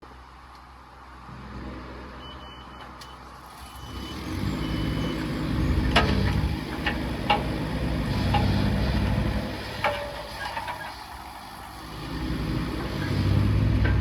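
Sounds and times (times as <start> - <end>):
excavator diesel engine running: 3.2 - 14.0.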